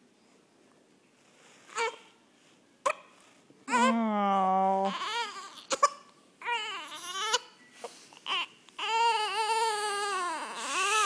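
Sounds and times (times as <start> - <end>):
baby crying: 3.7 - 4.0, 4.8 - 7.6, 8.2 - 11.0.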